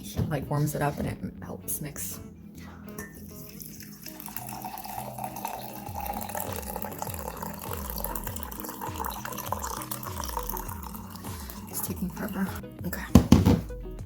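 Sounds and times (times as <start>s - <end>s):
coffee pouring into a mug: 3.1s - 12.6s.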